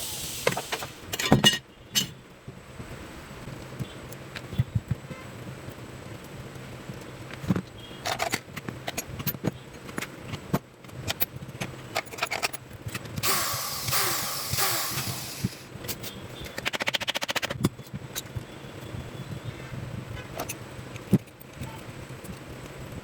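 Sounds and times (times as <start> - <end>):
tools and metal parts clicking: 8.0 - 18.4, 20.4 - 22.4.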